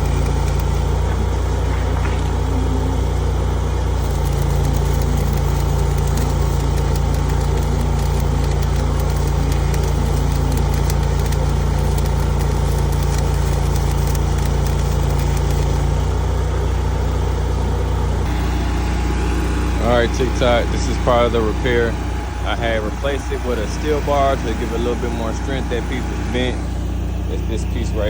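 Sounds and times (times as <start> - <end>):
engine idling: 0.0 - 28.0.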